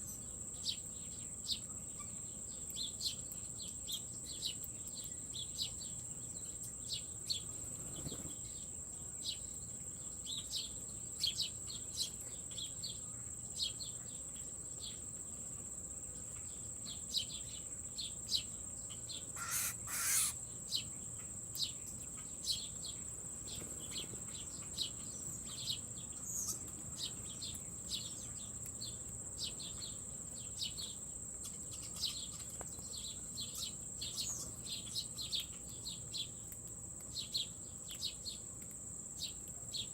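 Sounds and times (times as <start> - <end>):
insect drone: 0.0 - 32.3
bird chirps: 18.3 - 20.9
loud bird call: 19.4 - 20.4.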